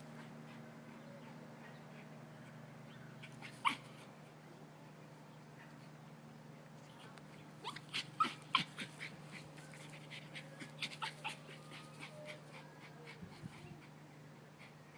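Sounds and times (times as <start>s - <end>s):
steady low hum: 0.0s - 14.9s
dog yipping and whimpering: 3.2s - 4.1s, 7.6s - 13.9s.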